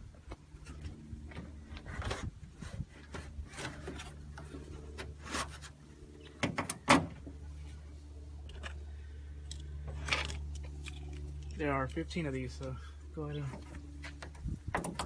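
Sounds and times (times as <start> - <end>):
rubbing and scraping: 0.6 - 6.0.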